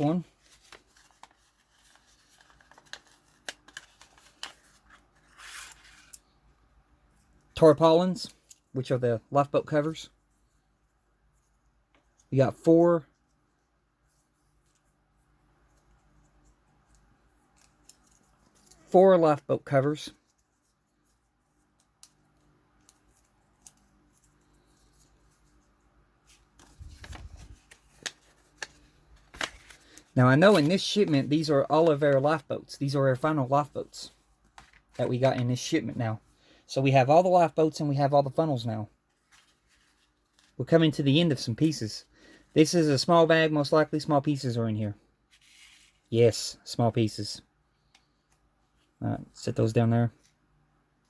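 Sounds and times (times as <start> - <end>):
packaging rustle: 0.3 - 6.2.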